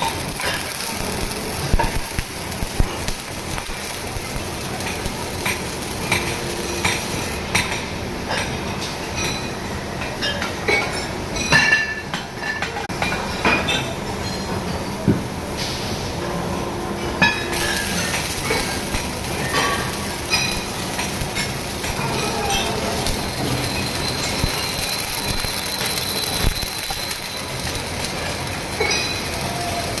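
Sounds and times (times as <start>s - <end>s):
steady hiss: 0.0s - 7.6s
high ringing squeals: 22.0s - 30.0s.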